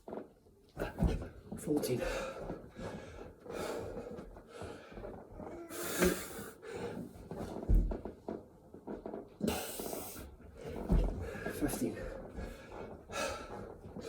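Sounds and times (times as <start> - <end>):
man breathing hard: 2.0 - 7.1, 9.4 - 14.0
body thumping on floor: 7.5 - 8.1, 10.7 - 11.4.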